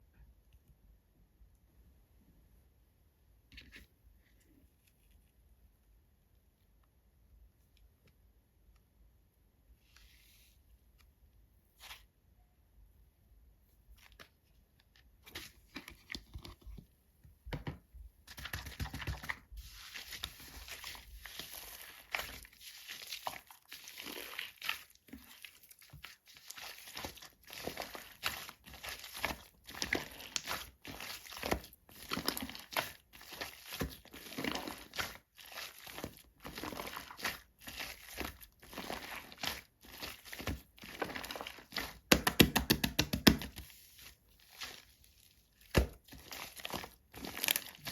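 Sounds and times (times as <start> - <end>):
slime crackling and popping: 18.3 - 43.7, 44.5 - 47.9.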